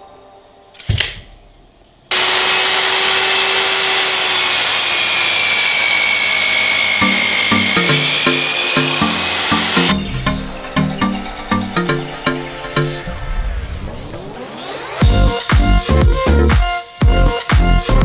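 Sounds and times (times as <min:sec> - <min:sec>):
sharp click: 0:00.8 - 0:01.3
power tool working wood: 0:02.1 - 0:10.1.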